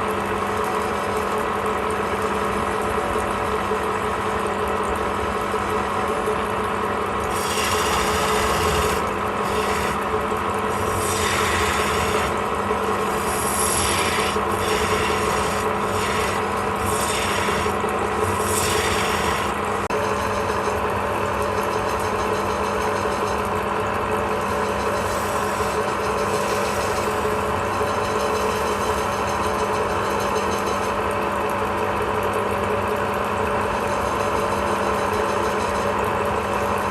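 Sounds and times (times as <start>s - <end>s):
wood lathe running: 0.7s - 30.7s
tool scraping spinning wood: 5.1s - 30.9s.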